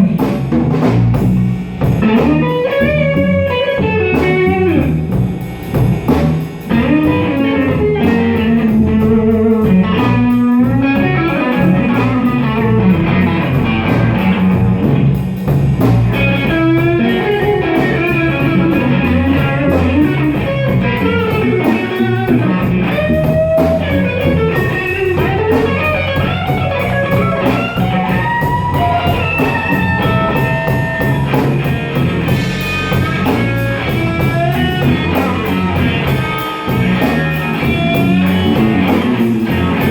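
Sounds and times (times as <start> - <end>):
blues band accompaniment: 0.0 - 39.9
electric guitar lead with bent notes: 0.0 - 39.9.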